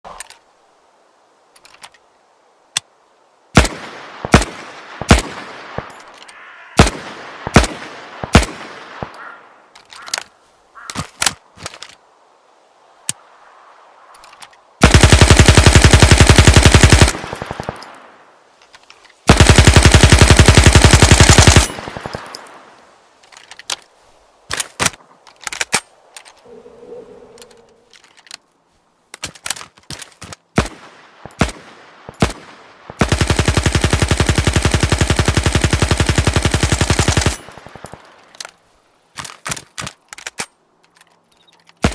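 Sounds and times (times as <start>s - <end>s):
submachine gun single shots: 3.6s - 6.1s, 6.8s - 9.4s, 14.8s - 18.0s
automatic gunfire bursts: 14.8s - 17.9s, 19.3s - 22.4s, 32.2s - 38.0s.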